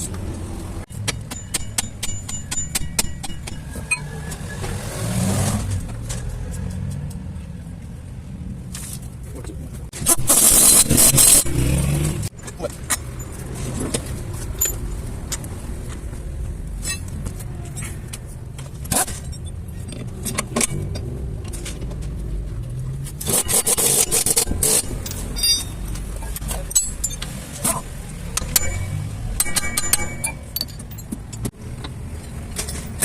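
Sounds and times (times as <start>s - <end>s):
metallic clinks of tools: 1.0s - 4.4s, 23.2s - 27.8s, 28.4s - 31.5s.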